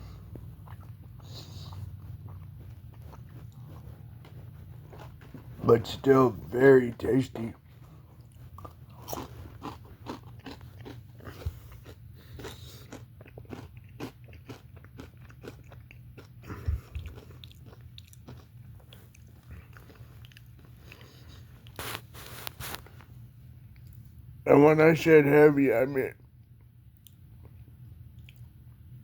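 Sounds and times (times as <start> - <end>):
person chewing crunchy fried potatoes: 0.0 - 23.0
steady low hum: 0.0 - 29.0.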